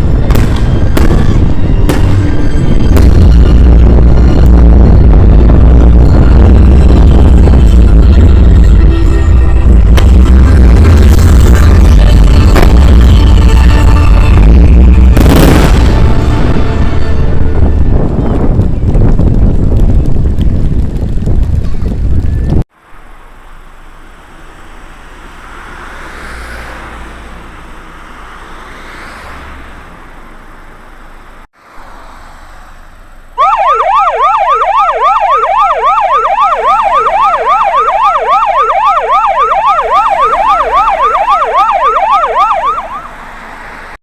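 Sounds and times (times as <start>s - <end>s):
electronic yelp siren: 33.4s - 43.4s.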